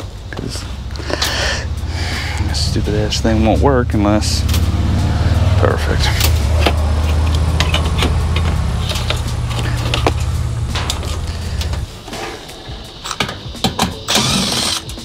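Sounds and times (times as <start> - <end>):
low mechanical hum: 5.7 - 12.0
clicks and metallic clinks: 6.2 - 11.9.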